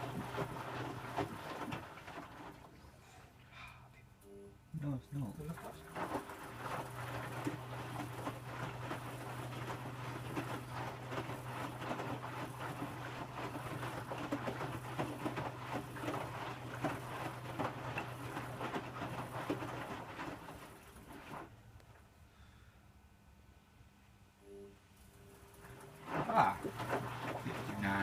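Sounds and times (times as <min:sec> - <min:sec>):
washing machine drum tumbling: 0:00.0 - 0:02.7, 0:05.3 - 0:21.5, 0:25.4 - 0:28.0
water sloshing: 0:00.0 - 0:03.4, 0:05.2 - 0:21.7, 0:25.1 - 0:28.0
steady motor hum: 0:00.0 - 0:22.7, 0:24.4 - 0:28.0
laundry dropping: 0:05.8 - 0:21.5, 0:25.7 - 0:28.0.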